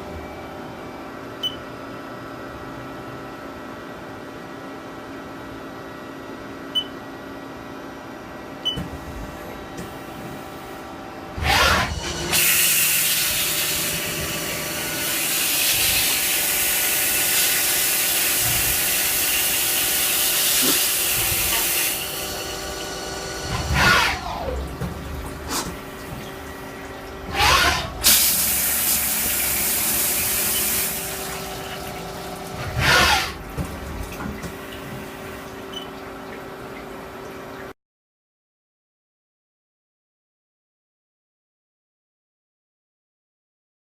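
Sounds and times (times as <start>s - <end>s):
lathe machine hum: 10.5s - 34.1s
rushing coolant hiss: 12.3s - 23.4s, 28.0s - 31.6s.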